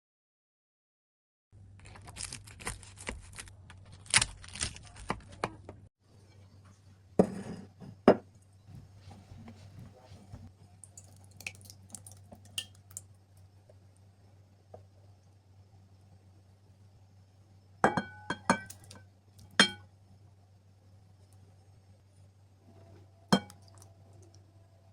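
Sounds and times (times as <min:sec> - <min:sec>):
low steady hum: 0:06.1 - 0:24.9
dishes and utensils clinking: 0:17.8 - 0:19.0, 0:19.6 - 0:19.8, 0:23.3 - 0:23.9.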